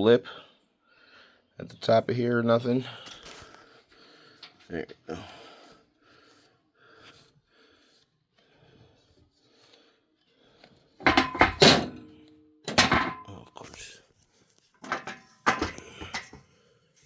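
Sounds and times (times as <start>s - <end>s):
metal tools clanking: 11.0s - 12.1s, 12.7s - 13.4s, 14.8s - 16.4s.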